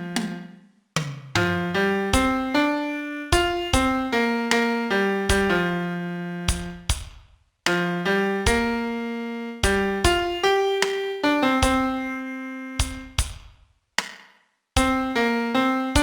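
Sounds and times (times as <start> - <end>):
piano playing single-note melody: 1.7 - 6.6, 7.7 - 13.2, 14.8 - 16.0.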